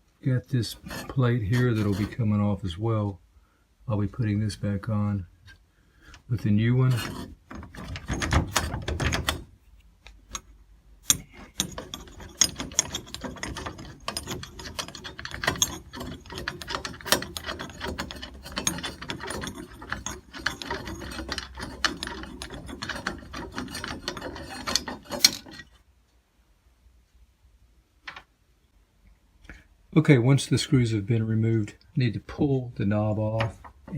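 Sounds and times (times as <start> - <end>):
metal scraping: 0.6 - 2.7, 6.3 - 9.6, 10.2 - 25.8.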